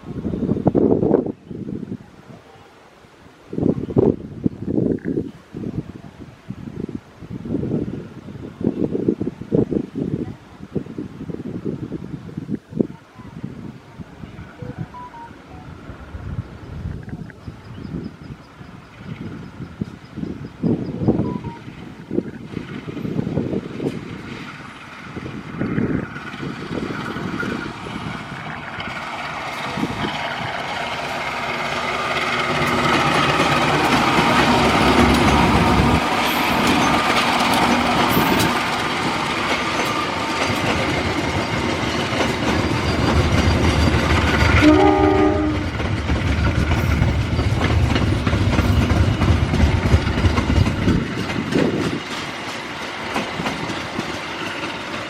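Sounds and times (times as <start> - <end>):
train wheels clattering on rails: 22.5 - 55.0
train horn blast: 44.6 - 45.8.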